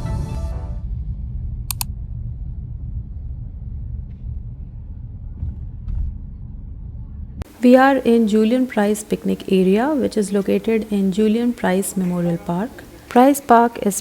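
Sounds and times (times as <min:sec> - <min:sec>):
background music: 0:00.0 - 0:00.8
low steady rumbling: 0:00.0 - 0:14.0.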